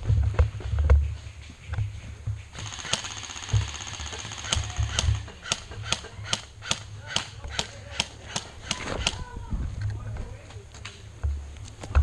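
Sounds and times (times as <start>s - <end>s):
airsoft guns firing: 2.6s - 9.3s.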